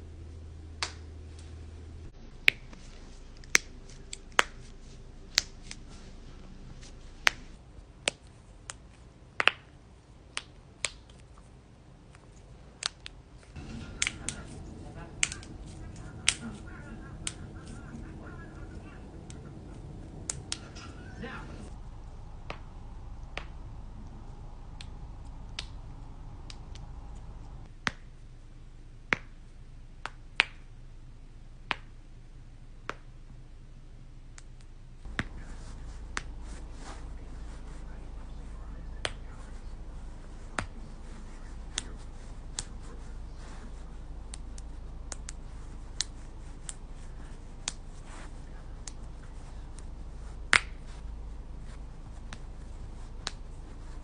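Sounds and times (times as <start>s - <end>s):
low background hum: 0.0s - 54.0s
knuckles cracking: 2.4s - 6.0s, 12.1s - 21.0s, 22.4s - 25.8s, 50.5s - 51.0s, 51.7s - 54.0s.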